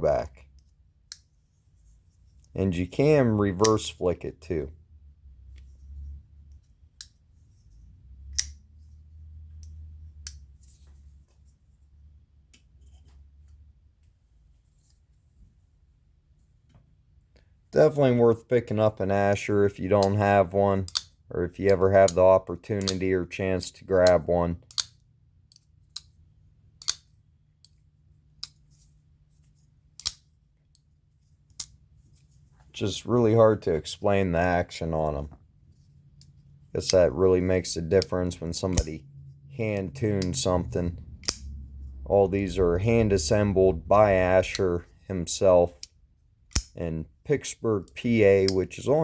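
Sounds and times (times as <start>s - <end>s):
folding knife clicking: 20.9s - 21.1s, 22.8s - 23.0s, 24.1s - 26.1s, 26.8s - 27.8s, 30.0s - 30.8s, 41.2s - 41.5s, 46.5s - 46.8s.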